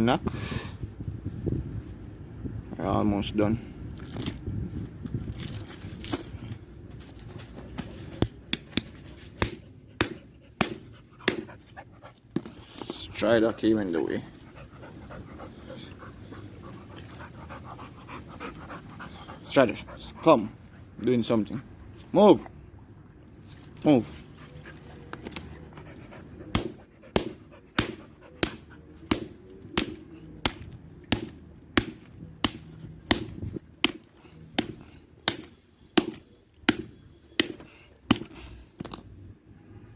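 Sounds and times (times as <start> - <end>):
hammer knocking on steel padlock: 9.4 - 11.5, 26.6 - 38.5.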